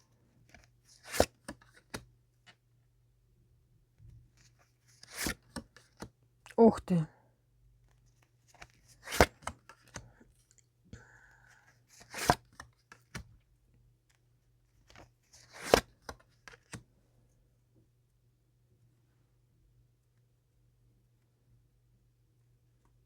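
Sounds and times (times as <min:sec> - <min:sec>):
cards ticking and sliding: 0:00.5 - 0:02.0, 0:04.9 - 0:06.1, 0:08.2 - 0:10.1, 0:11.9 - 0:13.3, 0:14.8 - 0:16.8.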